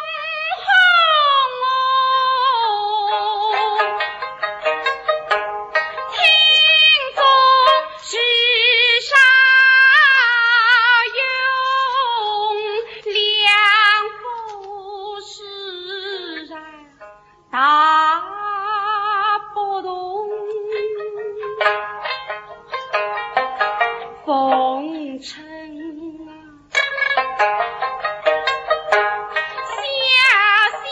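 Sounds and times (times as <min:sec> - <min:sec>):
woman singing with vibrato: 0:00.0 - 0:04.2, 0:06.0 - 0:21.9, 0:24.0 - 0:27.1, 0:29.3 - 0:30.9
plucked string accompaniment: 0:00.0 - 0:30.9.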